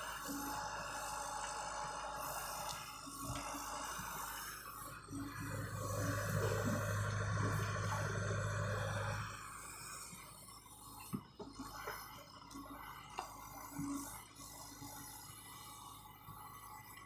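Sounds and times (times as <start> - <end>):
diesel engine running: 5.3 - 9.3.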